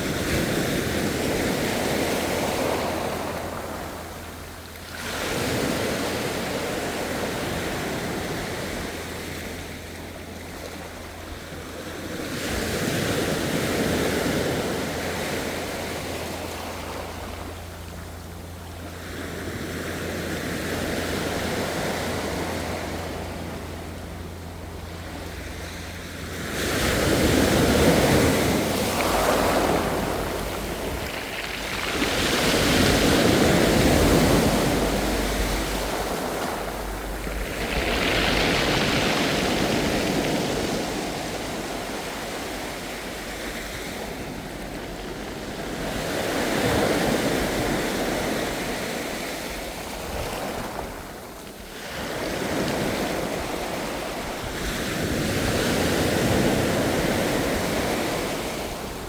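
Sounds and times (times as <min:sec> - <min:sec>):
ocean waves: 0:00.0 - 0:59.0.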